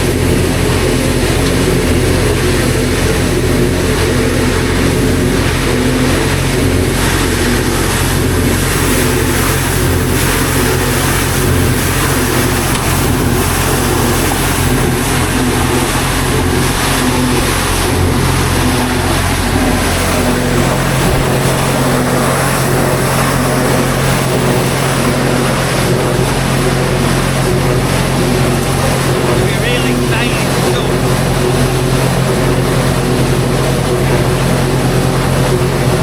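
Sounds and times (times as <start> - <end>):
pressure washer engine hum: 0.0 - 36.0
pressure washer hiss: 8.6 - 16.2, 19.8 - 25.2.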